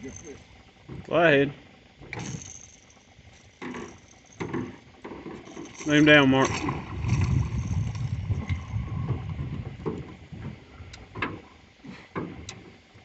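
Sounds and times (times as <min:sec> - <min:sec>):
knocks against boat: 0:00.8 - 0:01.2, 0:03.6 - 0:05.8, 0:06.5 - 0:12.8
wind rumble: 0:05.8 - 0:11.1.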